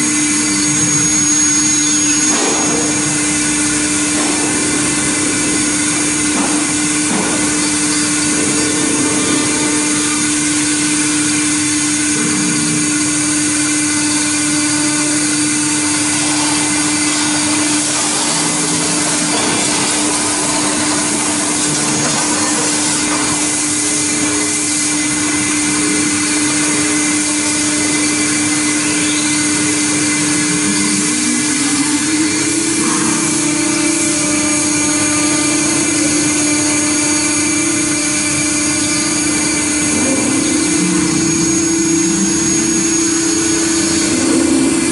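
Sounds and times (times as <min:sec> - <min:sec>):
router spindle whine: 0:00.0 - 0:44.9.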